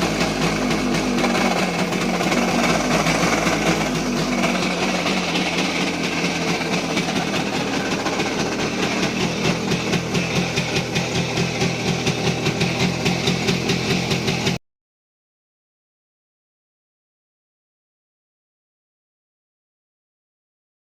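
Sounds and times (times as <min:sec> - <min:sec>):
engine knocking: 0:00.0 - 0:14.6
two-stroke motorcycle engine pulsing: 0:00.0 - 0:14.6.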